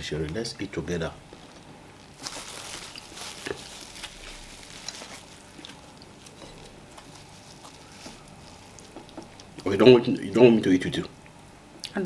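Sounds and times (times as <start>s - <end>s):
soft eating clicks and smacks: 3.0s - 9.9s.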